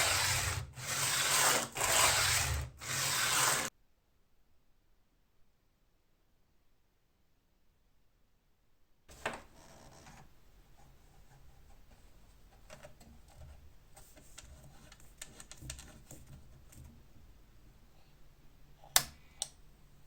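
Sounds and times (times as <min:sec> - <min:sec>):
light clicks and taps: 0:12.5 - 0:16.9.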